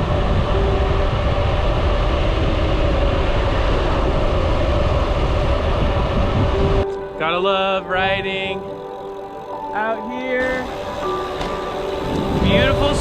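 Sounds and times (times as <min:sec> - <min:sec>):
wind buffeting microphone: 0:00.0 - 0:07.2, 0:10.4 - 0:13.0
tyres rumbling on road: 0:10.4 - 0:13.0.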